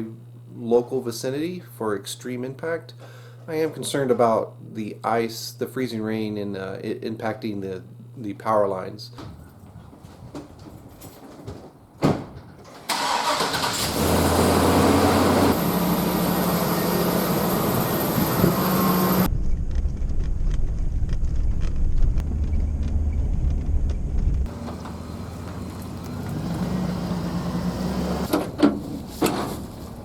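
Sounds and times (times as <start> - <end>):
heavy low engine rumble: 12.9 - 30.0
vehicle engine running: 13.7 - 30.0.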